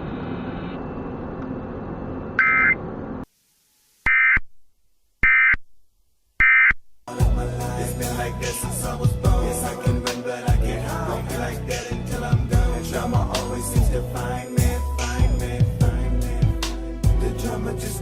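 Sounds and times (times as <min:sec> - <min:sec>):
broadcast hiss: 0:03.3 - 0:04.4
loud music: 0:07.1 - 0:18.0.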